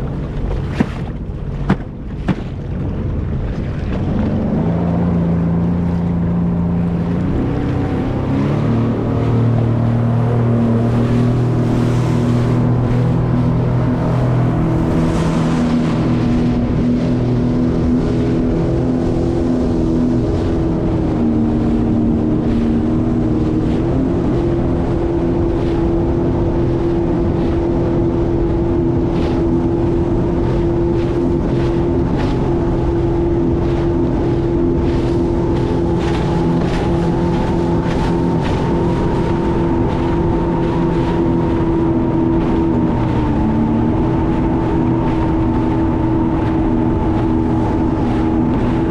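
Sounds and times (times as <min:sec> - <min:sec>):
watercraft engine running: 0:00.0 - 0:48.9
short knocks: 0:00.5 - 0:02.6.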